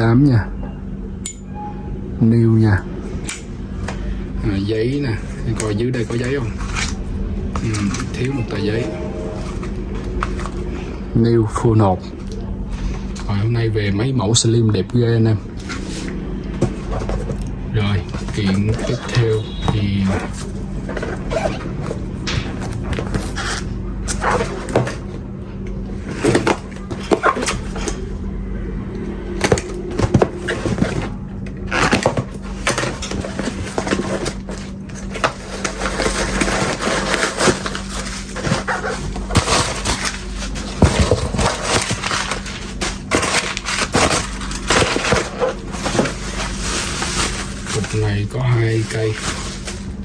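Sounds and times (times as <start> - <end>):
steady low hum: 0.0 - 50.0
knocks and clatter of contents: 3.3 - 11.0, 15.6 - 25.2, 25.9 - 28.1, 29.3 - 50.0
wrapping rustling: 4.4 - 11.0, 15.5 - 25.1, 29.3 - 50.0.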